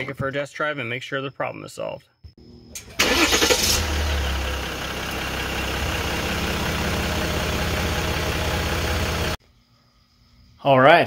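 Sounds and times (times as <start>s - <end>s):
diesel engine idling: 2.9s - 9.4s.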